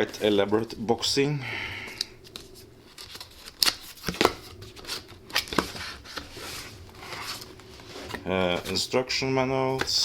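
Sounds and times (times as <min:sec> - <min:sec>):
cardboard packaging rustling: 0:01.9 - 0:09.0.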